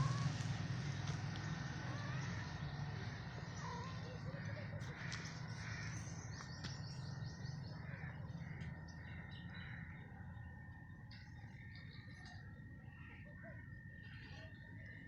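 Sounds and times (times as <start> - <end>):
crow-like caws: 3.6 - 6.5, 7.7 - 10.4, 12.8 - 15.0.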